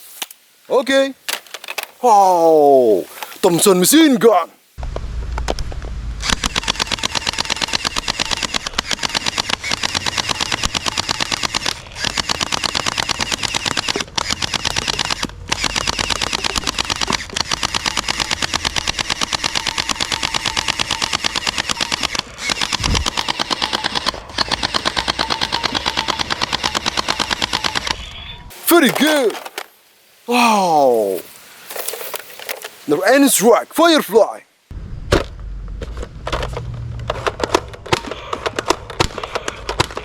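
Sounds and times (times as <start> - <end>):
toy machine gun rattling bursts: 6.2 - 28.0.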